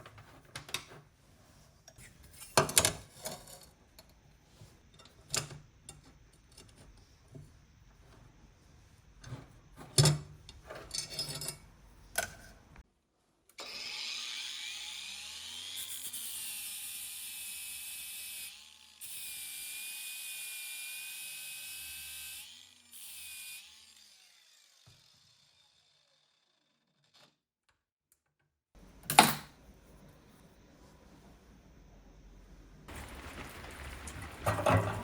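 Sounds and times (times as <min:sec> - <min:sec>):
power tool motor whining: 0:13.6 - 0:17.5.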